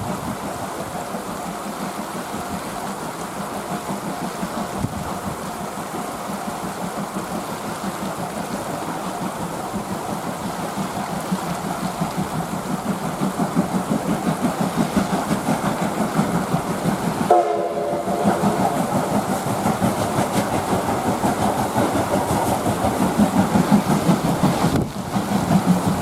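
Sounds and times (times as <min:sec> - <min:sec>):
steam locomotive exhaust beating: 0:00.0 - 0:26.0
chime steam whistle blast: 0:17.3 - 0:18.4.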